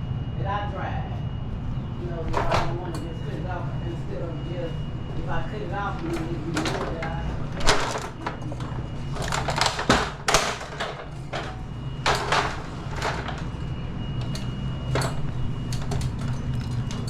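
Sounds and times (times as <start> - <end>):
steady low hum: 0.0 - 17.0
irregular knocks and clatters: 6.0 - 17.0.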